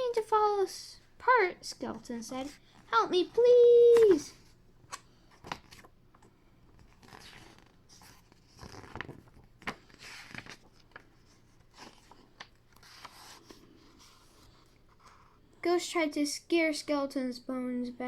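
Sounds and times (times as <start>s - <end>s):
paper rustling: 2.2s - 15.4s.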